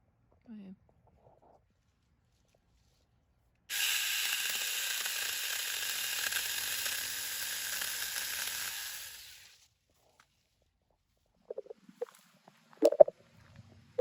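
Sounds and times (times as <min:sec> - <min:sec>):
cordless chainsaw running: 0:03.7 - 0:09.6.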